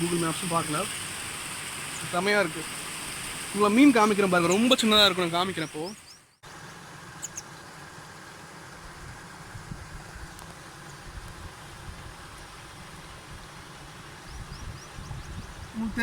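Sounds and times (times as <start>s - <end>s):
stream water hiss: 0.0s - 16.0s
high chirps: 3.6s - 6.4s.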